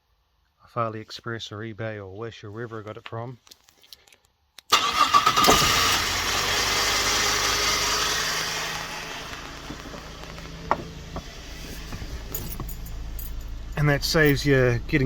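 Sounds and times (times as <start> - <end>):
car engine cranking and starting: 4.7 - 15.0
car engine idling: 4.7 - 15.0.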